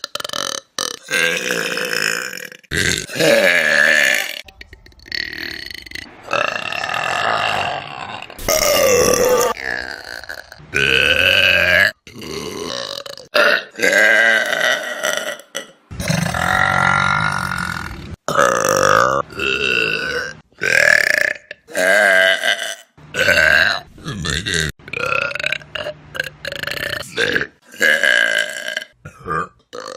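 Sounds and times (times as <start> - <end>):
loud human burps: 0.0 - 4.5, 5.1 - 29.9
voices: 3.1 - 6.6.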